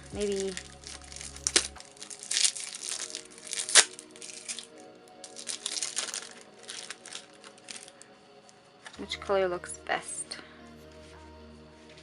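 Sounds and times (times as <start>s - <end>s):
sharp paper crackle: 0.0s - 8.1s
paper notes rustling and crinkling: 0.0s - 9.0s
soft background music: 0.0s - 12.0s.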